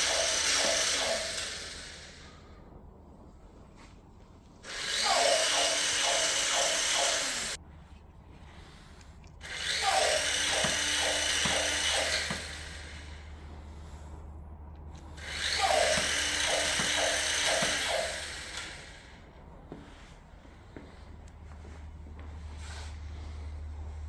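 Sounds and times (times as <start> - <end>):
toy robot motor whining: 0.0 - 2.3, 4.7 - 7.6, 9.4 - 13.1, 15.2 - 19.0.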